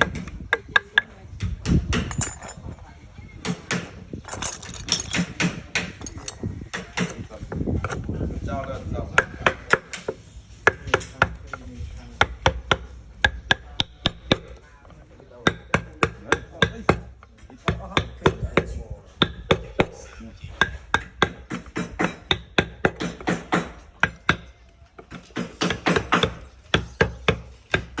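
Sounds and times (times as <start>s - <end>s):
mallet striking chisel into wood: 0.0s - 2.2s, 4.9s - 6.1s, 9.2s - 11.6s, 12.2s - 14.6s, 15.4s - 28.0s.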